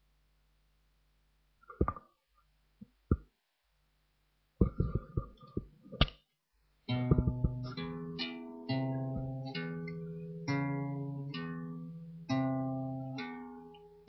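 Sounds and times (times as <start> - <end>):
guitar notes and strummed chord: 6.9 - 14.0.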